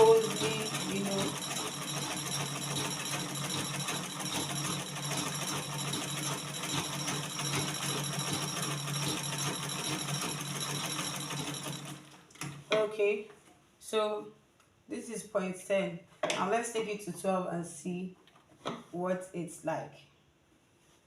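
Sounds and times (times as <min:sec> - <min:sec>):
treadle sewing machine stitching: 0:00.0 - 0:12.6.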